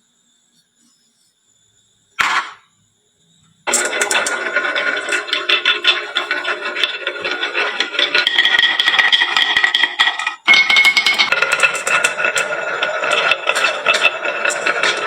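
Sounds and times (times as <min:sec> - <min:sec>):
glass marbles clacking: 0:03.7 - 0:15.0
ringing whir of rolling: 0:03.7 - 0:15.0.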